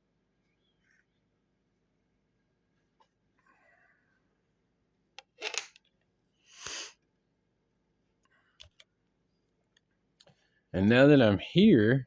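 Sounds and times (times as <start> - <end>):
lock-picking tools clicking: 5.2 - 5.8.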